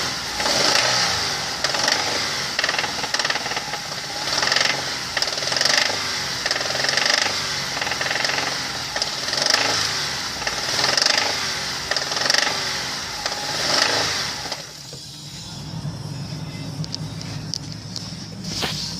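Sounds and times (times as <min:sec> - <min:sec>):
car engine revving: 0:00.0 - 0:18.9
engine knocking rattle: 0:00.3 - 0:14.8.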